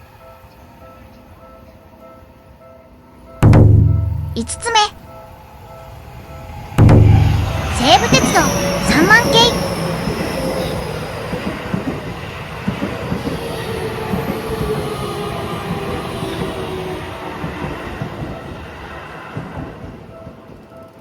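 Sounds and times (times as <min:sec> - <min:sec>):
electric train whine: 0:05.1 - 0:21.0.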